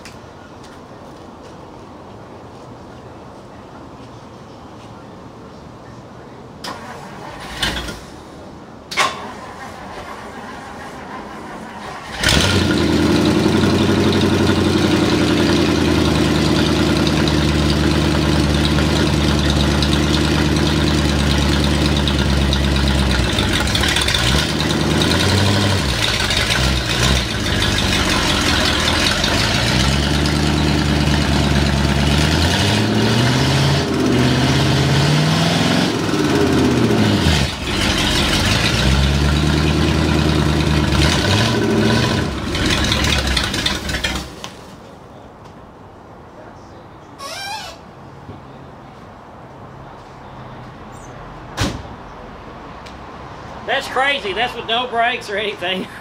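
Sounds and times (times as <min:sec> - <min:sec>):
car engine starting and running: 0:06.6 - 0:44.7.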